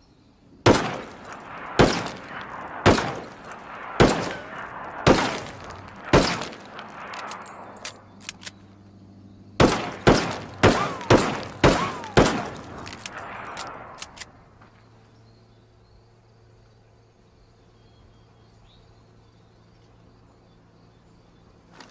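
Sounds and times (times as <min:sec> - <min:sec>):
revolver shots echoing: 0:00.7 - 0:07.8, 0:09.6 - 0:14.1
metallic clicks: 0:05.4 - 0:08.6, 0:09.9 - 0:14.3.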